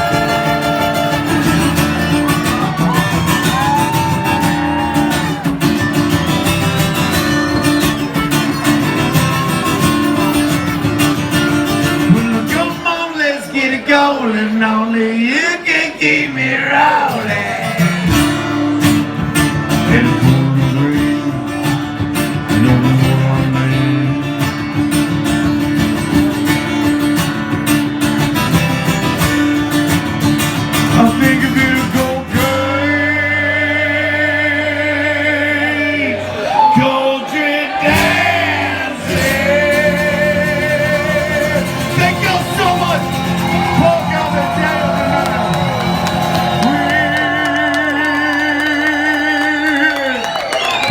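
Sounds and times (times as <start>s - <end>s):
electric guitar: 0.0s - 12.8s, 17.5s - 36.8s
country band playing: 0.0s - 15.0s, 16.5s - 50.9s
person singing: 22.5s - 24.8s, 30.9s - 42.0s, 46.5s - 50.2s.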